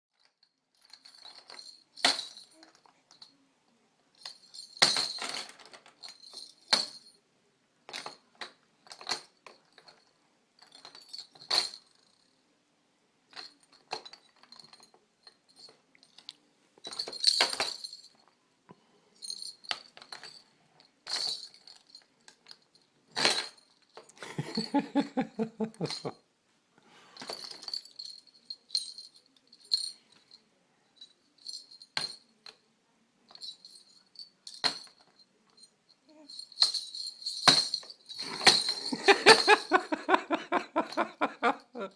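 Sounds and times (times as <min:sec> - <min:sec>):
sleigh bells jingling: 0:00.5 - 0:03.3, 0:04.2 - 0:07.2, 0:16.8 - 0:18.2, 0:19.2 - 0:20.4, 0:21.1 - 0:26.2, 0:27.2 - 0:30.3, 0:31.0 - 0:32.3, 0:33.3 - 0:41.9.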